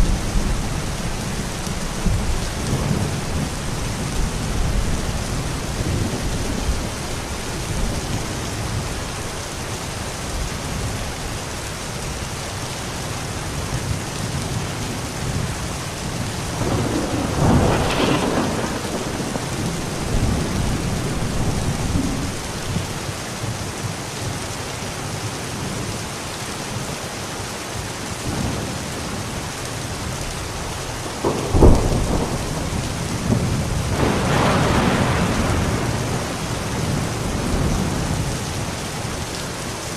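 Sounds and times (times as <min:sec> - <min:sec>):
rolling thunder: 0:00.0 - 0:09.3, 0:15.3 - 0:23.1, 0:30.6 - 0:39.3
heavy rain: 0:00.0 - 0:39.9
sharp thunderclap: 0:16.5 - 0:22.8, 0:31.2 - 0:38.2.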